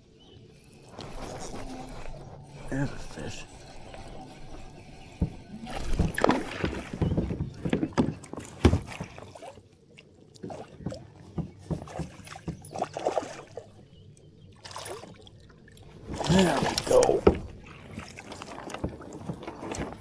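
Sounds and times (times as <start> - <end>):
knocks against a kayak: 5.2 - 9.3, 10.8 - 12.8
water splashing: 14.6 - 20.0.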